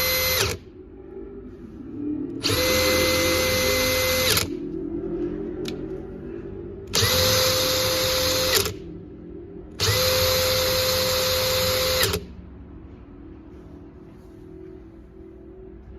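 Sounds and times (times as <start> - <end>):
cordless drill whining: 0.0 - 0.6, 2.4 - 4.5, 6.9 - 8.8, 9.8 - 12.3.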